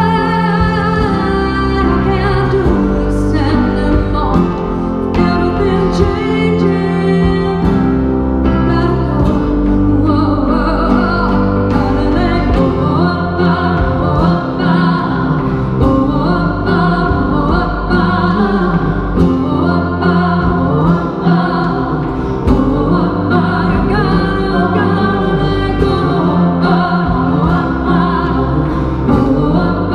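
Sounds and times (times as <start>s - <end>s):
live band playing chords: 0.0s - 29.9s
person singing: 0.0s - 29.9s.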